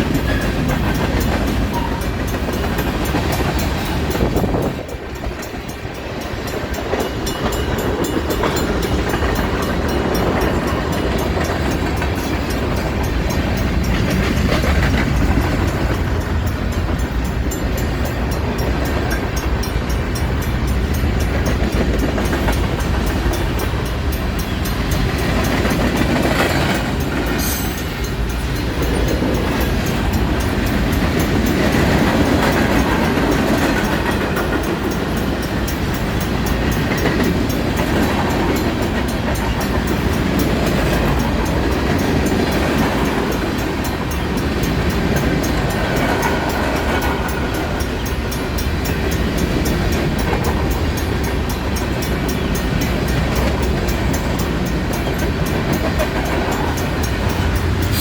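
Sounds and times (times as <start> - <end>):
train wheels rumbling on rails: 0.0 - 58.0
sharp metallic sound: 57.8 - 58.0.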